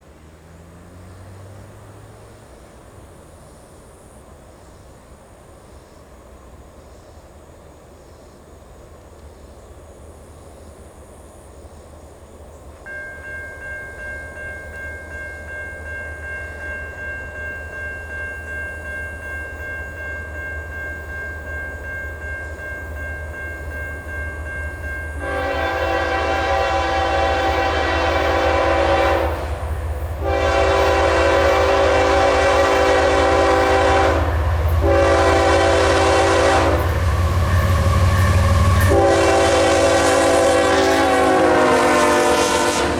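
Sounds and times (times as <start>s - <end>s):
diesel locomotive rumble: 0.0s - 42.9s
crossing signal bell ringing: 12.9s - 42.9s
locomotive horn blasts: 24.2s - 42.9s.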